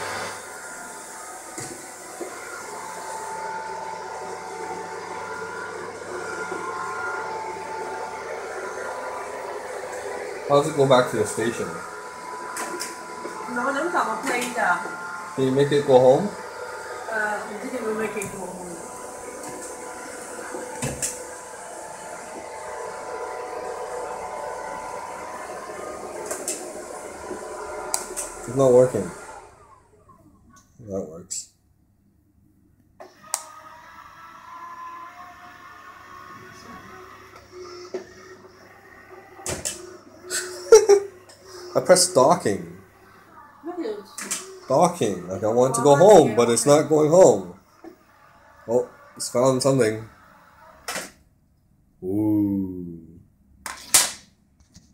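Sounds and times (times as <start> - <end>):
robot vacuum motor whine: 0.0 - 30.2, 33.0 - 51.2.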